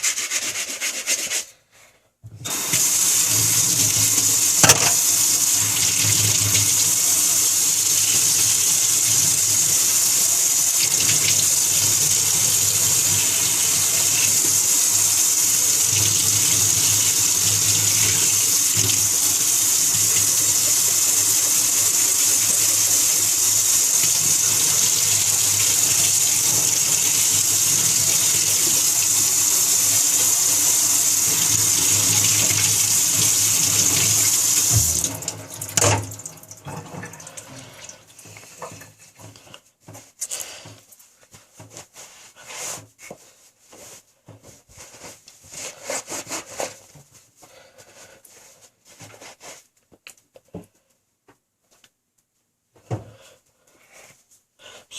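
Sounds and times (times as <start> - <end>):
water running from a tap: 2.4 - 39.0.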